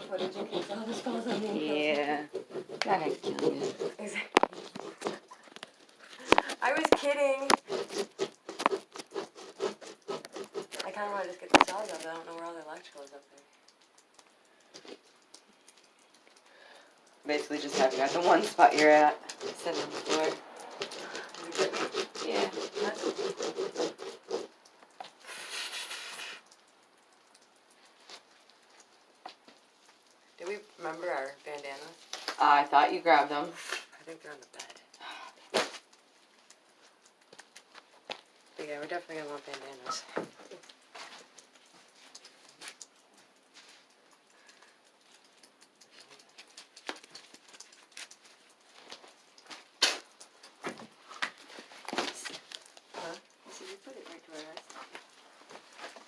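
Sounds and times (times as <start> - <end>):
hand saw cutting: 0.0 - 11.6, 17.3 - 24.6
short hiss: 25.2 - 26.5.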